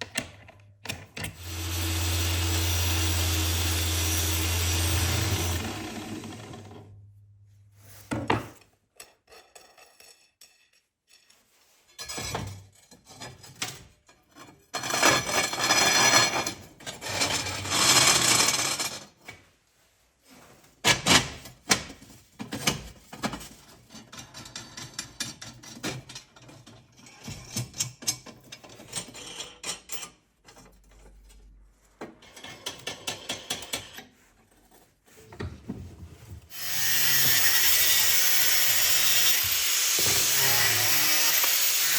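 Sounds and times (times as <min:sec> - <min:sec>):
hand tool scraping: 0:01.4 - 0:06.8, 0:36.4 - 0:41.9.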